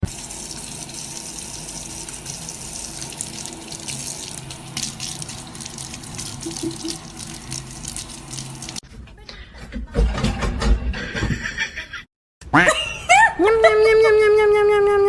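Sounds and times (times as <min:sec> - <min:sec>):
running water splashing: 0:00.0 - 0:08.8.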